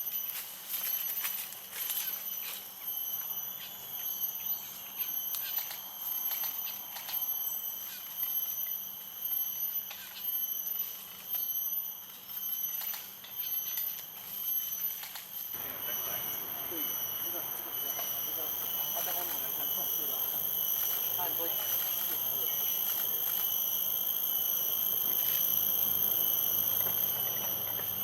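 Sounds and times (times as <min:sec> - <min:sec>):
high-pitched whine: 0:15.5 - 0:28.0.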